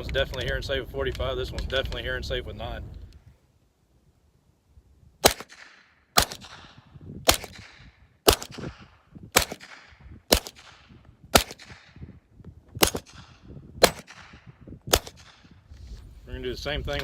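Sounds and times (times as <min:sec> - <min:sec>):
suppressed pistol shots: 0:05.2 - 0:12.0, 0:12.8 - 0:15.6.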